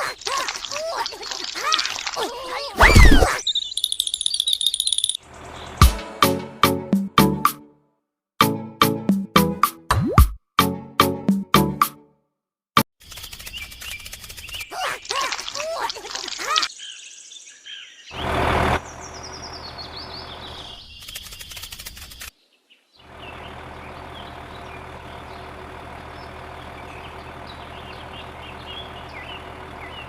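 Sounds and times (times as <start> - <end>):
birds chirping: 0.1 - 6.0, 13.0 - 30.0.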